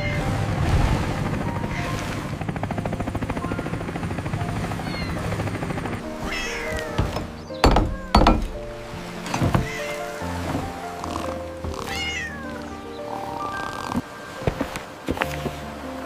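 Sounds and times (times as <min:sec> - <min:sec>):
cat meowing: 0:03.4 - 0:03.8, 0:04.8 - 0:05.2, 0:06.2 - 0:08.1, 0:09.6 - 0:10.0, 0:11.8 - 0:12.7
loud thumps: 0:06.6 - 0:09.8.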